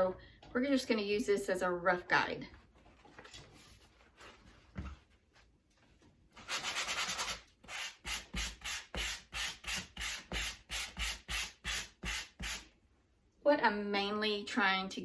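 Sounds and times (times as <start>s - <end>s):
hand sanding drywall: 6.4s - 12.7s.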